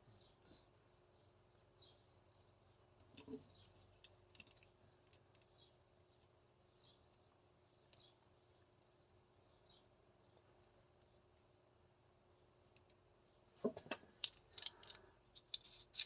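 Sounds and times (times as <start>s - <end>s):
high bird chirps: 1.8s - 4.0s
faint clicks of parts handled: 3.1s - 5.6s, 12.6s - 16.0s.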